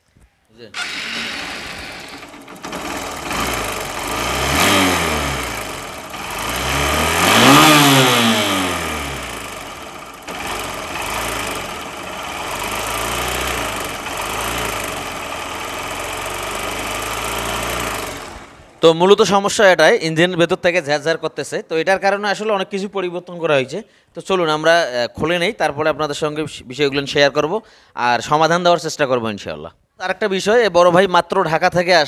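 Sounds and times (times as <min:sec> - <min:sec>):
motorcycle engine idling and revving: 0:00.8 - 0:18.8
engine rattling: 0:00.8 - 0:19.2.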